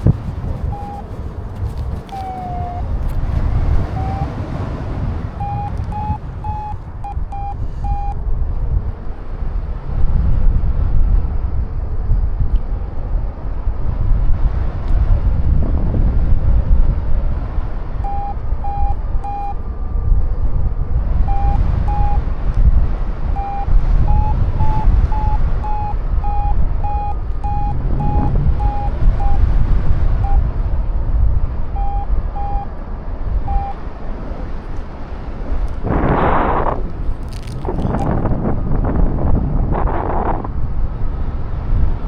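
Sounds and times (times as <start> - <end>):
variometer beeping: 0.0 - 8.2, 18.0 - 19.7, 21.2 - 22.6, 23.2 - 30.8, 31.5 - 33.9
wind buffeting microphone: 0.0 - 42.0.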